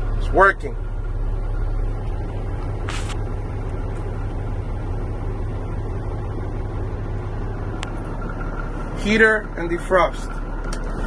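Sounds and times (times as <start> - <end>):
diesel truck engine idling: 0.0 - 11.0
short hiss: 2.8 - 3.2.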